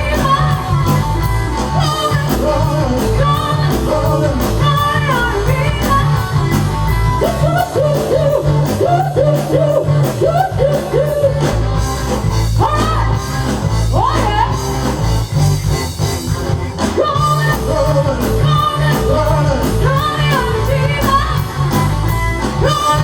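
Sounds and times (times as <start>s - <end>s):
person singing: 0.0s - 11.6s, 16.8s - 23.0s
live rock band playing: 0.0s - 23.0s.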